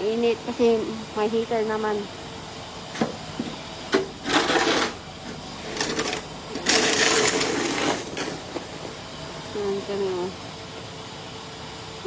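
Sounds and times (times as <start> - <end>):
snow shovel scraping snow: 4.2 - 5.0, 5.7 - 8.4.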